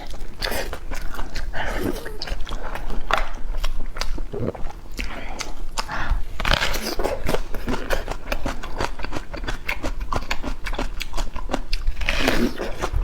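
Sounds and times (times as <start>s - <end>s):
person chewing food: 0.0s - 13.0s
crunchy bite: 4.0s - 13.0s.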